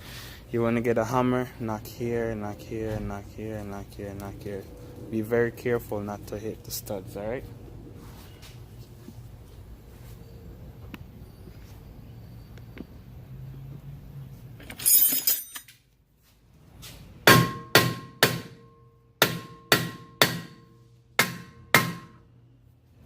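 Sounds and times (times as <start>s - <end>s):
metallic clatter: 14.6s - 15.8s
hammer striking metal hub: 17.3s - 22.2s.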